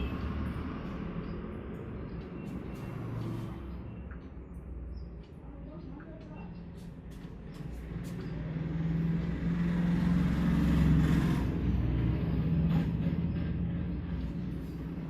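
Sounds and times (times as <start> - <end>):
vehicle engine passing by: 7.4 - 15.0.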